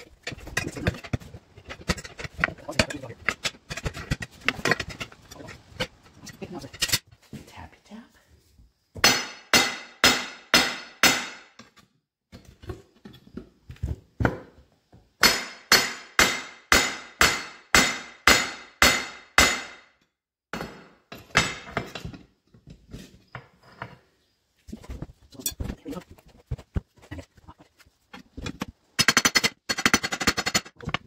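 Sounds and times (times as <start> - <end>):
hammer striking steel wheel: 9.0 - 11.7, 15.2 - 19.9.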